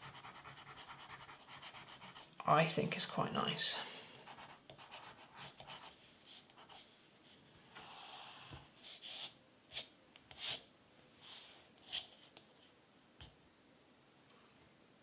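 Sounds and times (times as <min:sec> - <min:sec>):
crayon rubbing on paper: 0:00.0 - 0:02.3.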